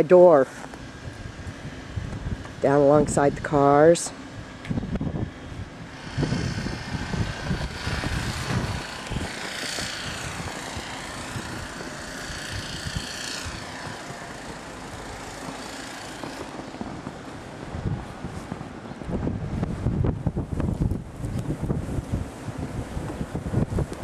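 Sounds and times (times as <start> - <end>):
wind rumbling on microphone: 0.6 - 24.0
engine passing by: 5.9 - 17.6.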